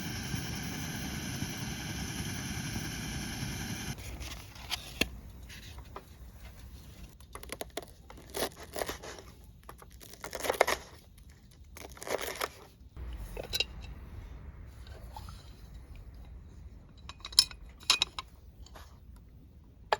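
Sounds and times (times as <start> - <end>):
wrapping material crinkling and tearing: 7.1 - 12.8.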